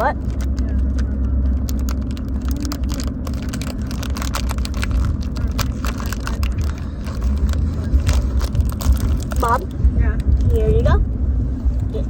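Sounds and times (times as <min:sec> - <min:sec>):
road rumble inside car: 0:00.0 - 0:12.0
small crackles and clicks: 0:00.2 - 0:09.6.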